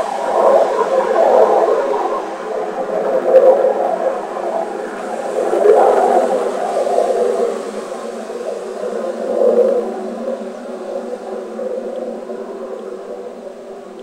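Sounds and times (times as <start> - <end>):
wavering droning noise: 0.0 - 14.0.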